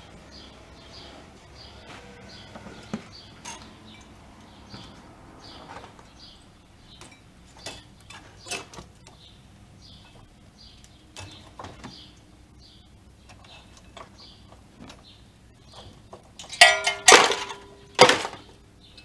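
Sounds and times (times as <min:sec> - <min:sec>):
small bird chirping: 0:00.0 - 0:16.2
tools tapping on metal: 0:02.5 - 0:05.0, 0:06.9 - 0:09.3, 0:10.0 - 0:12.3, 0:13.2 - 0:19.0.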